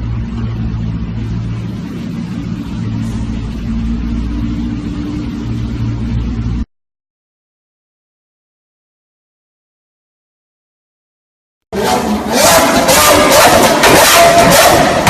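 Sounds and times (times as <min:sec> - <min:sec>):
car engine running: 0:00.0 - 0:06.6, 0:11.7 - 0:15.0.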